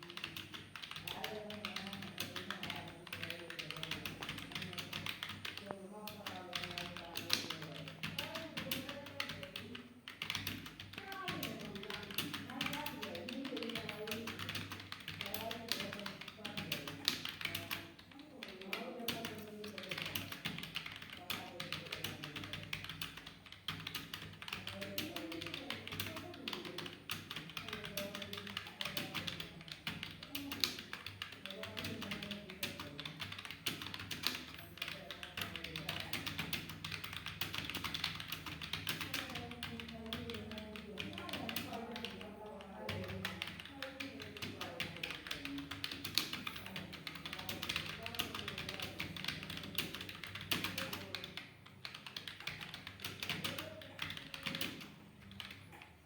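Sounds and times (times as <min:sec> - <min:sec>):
fast typing on keyboard: 0:00.0 - 0:56.0.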